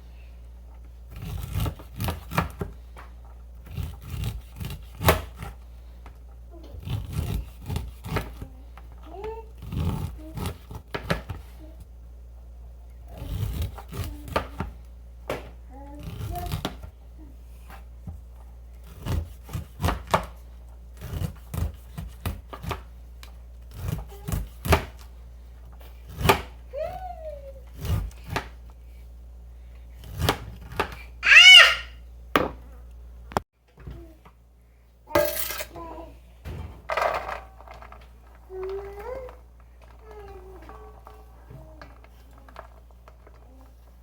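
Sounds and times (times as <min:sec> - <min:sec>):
knife chopping and scraping corn: 0:00.8 - 0:11.9, 0:13.0 - 0:29.1, 0:29.8 - 0:31.7
high-pitched voice calling: 0:31.2 - 0:32.0.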